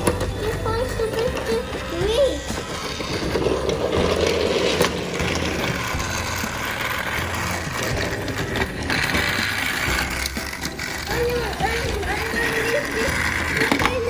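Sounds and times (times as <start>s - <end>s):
toy train motor whirring: 0.0s - 14.0s.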